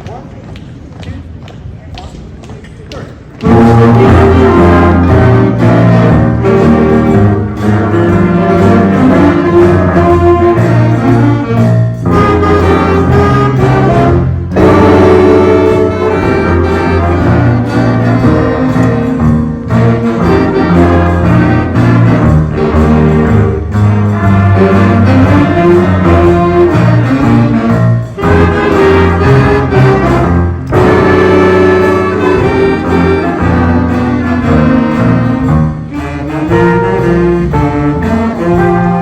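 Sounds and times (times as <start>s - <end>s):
school band playing: 2.9s - 39.0s.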